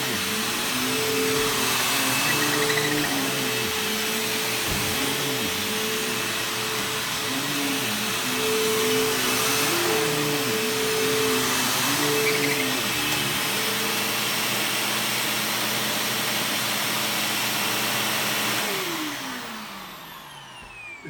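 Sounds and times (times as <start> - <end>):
vacuum cleaner motor hum: 0.0 - 21.0.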